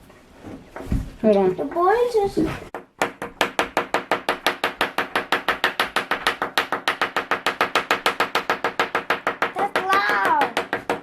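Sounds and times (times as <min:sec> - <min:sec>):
hammer tapping on plaster: 0:02.7 - 0:11.0.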